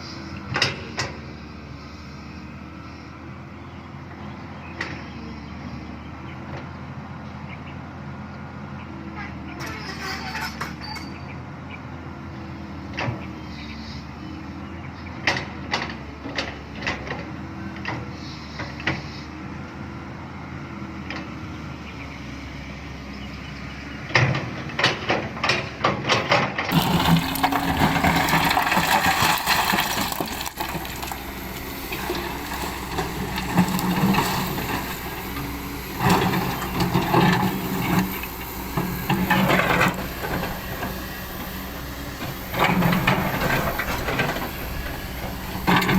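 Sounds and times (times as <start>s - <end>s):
excavator diesel engine: 0.0s - 45.9s
scraping: 26.7s - 37.6s.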